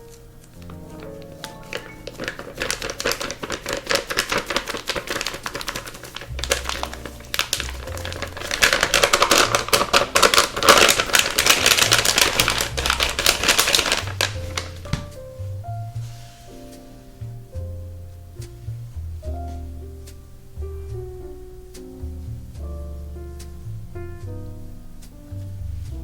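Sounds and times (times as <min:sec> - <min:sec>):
soft background music: 0:00.0 - 0:26.0
food packaging clicks and crinkles: 0:00.4 - 0:15.0.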